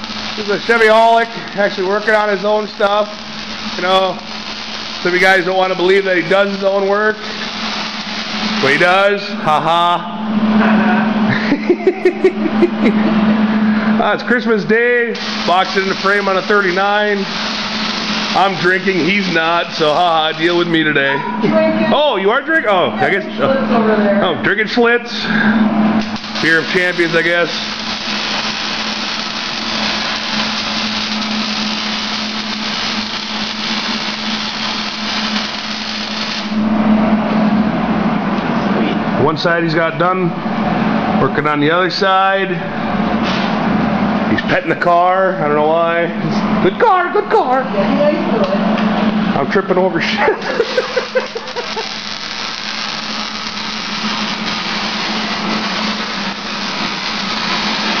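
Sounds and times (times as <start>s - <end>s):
welding arc crackling: 0.0s - 10.7s, 11.4s - 21.0s, 25.9s - 37.7s, 50.2s - 58.0s
low hum: 0.0s - 39.3s.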